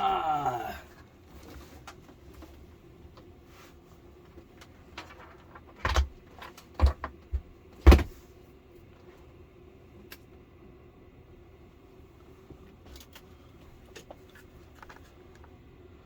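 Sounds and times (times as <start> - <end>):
faint steady hum: 0.0 - 16.0
knocks and clunks: 5.7 - 8.2.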